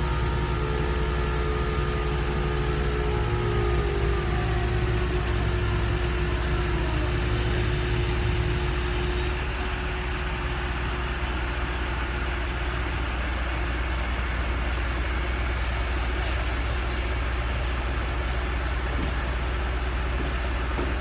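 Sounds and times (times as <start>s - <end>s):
large engine humming: 0.0s - 21.0s.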